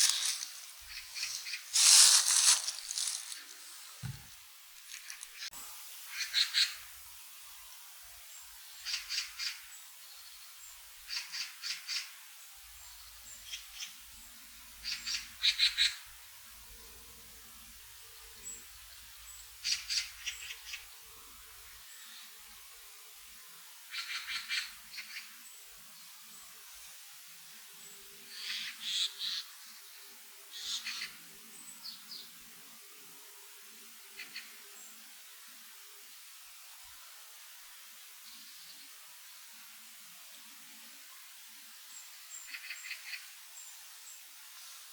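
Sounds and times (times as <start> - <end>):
short bird chips: 0.0 - 3.7.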